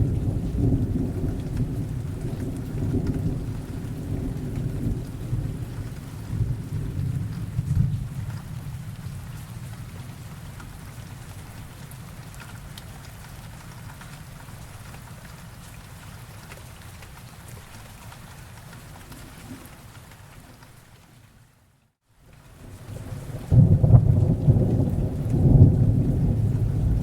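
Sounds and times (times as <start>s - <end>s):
thunder rumble: 0.0s - 10.2s, 22.8s - 27.0s
steady rain: 0.0s - 27.0s.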